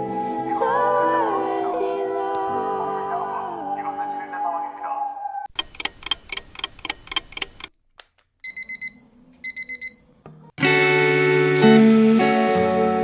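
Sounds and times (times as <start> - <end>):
guitar music: 10.6 - 13.0.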